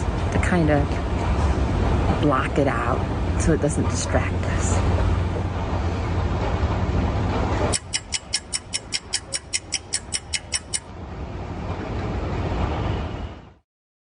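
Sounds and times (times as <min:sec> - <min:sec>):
background noise with low hum: 0:00.0 - 0:13.6
short high-pitched chirps: 0:07.8 - 0:10.8.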